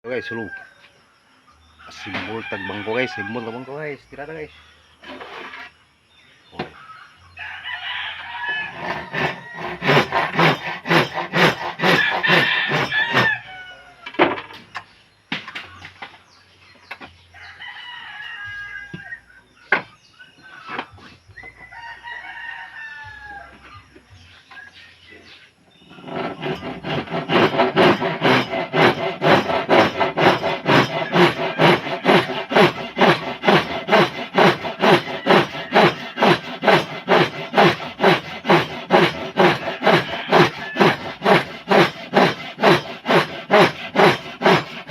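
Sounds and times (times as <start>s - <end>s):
rooster crowing: 0.0s - 0.9s, 1.9s - 3.8s, 7.3s - 10.1s, 11.7s - 14.1s, 17.4s - 19.2s, 21.7s - 23.7s, 30.8s - 32.5s, 39.5s - 41.3s
hand saw cutting wood: 5.0s - 5.7s, 8.5s - 13.5s, 25.9s - 44.9s.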